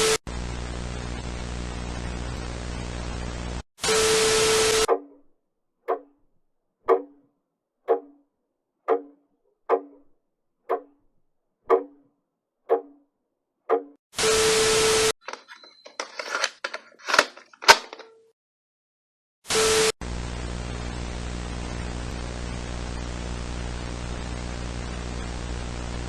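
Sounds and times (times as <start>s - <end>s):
buzzing static: 0.0s - 4.9s, 19.5s - 26.0s
sharp knocks with low ring: 7.9s - 8.2s, 8.9s - 10.0s, 11.7s - 12.0s.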